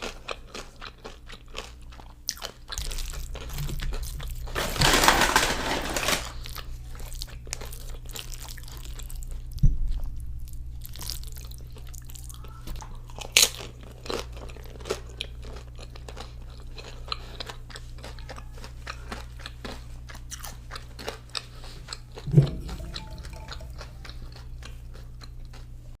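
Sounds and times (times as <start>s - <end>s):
person chewing and crunching food: 0.0s - 26.0s
steady low hum: 2.6s - 4.9s, 6.4s - 12.1s, 22.2s - 25.5s
louder knocks: 22.3s - 23.8s.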